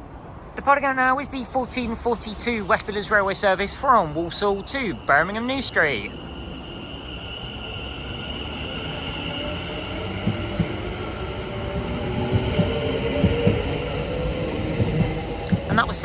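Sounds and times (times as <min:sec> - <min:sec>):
steady high tone: 0:01.0 - 0:16.0
electric train motor whine: 0:01.6 - 0:16.0
wheels knocking on track: 0:08.7 - 0:16.0.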